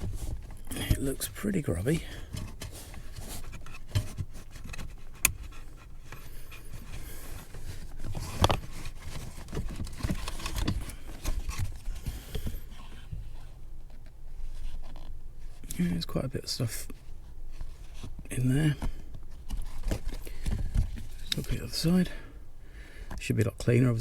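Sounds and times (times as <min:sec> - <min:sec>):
plastic scraping and rustling: 0:00.0 - 0:16.1, 0:16.7 - 0:22.2.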